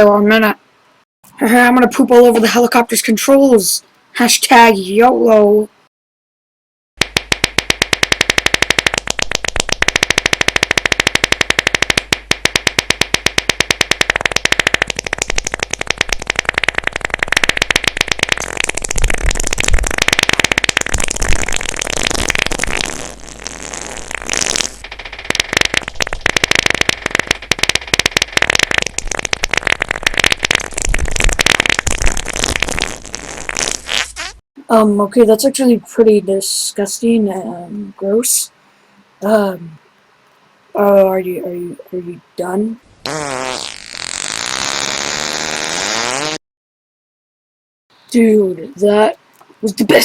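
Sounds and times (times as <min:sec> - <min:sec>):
comic fart sound effects: 0:07.9 - 0:34.4, 0:43.0 - 0:46.4.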